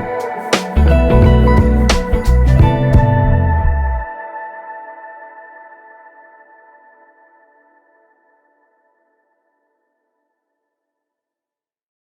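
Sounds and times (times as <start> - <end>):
bass and beat: 0.0 - 4.1.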